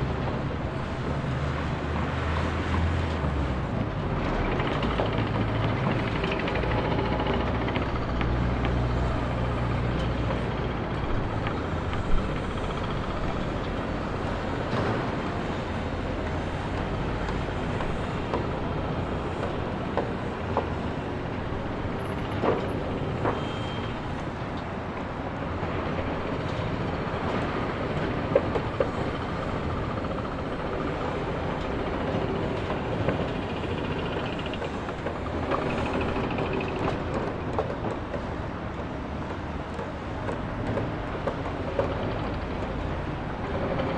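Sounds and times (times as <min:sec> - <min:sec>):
construction work din: 0:00.0 - 0:43.9.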